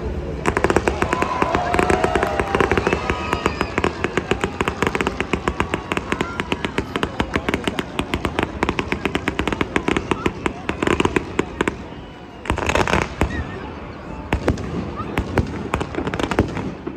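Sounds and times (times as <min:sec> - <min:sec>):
fireworks crackling: 0:00.0 - 0:16.9.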